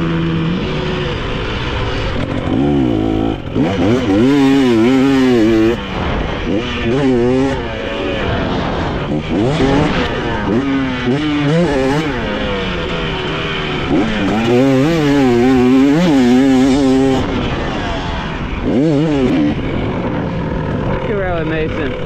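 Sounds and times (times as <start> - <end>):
dirt bike engine revving: 0.0 - 22.0.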